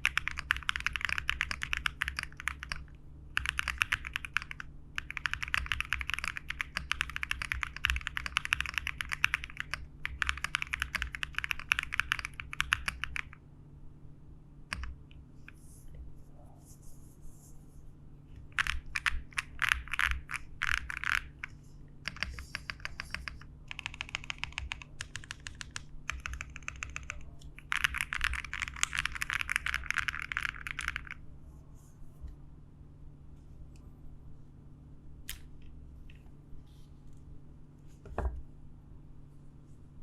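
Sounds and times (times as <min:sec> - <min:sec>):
typing on mechanical keyboard: 0:00.0 - 0:13.4, 0:18.4 - 0:31.2.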